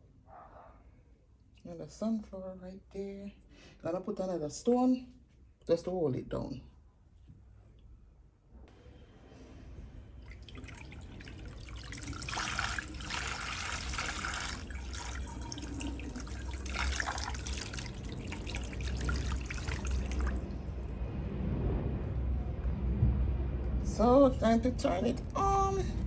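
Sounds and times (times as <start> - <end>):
water running and splashing: 10.3 - 20.4.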